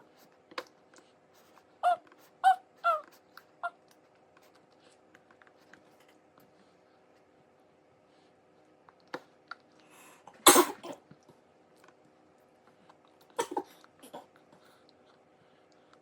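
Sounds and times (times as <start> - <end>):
toddler coughing: 10.5 - 11.0, 13.4 - 14.3.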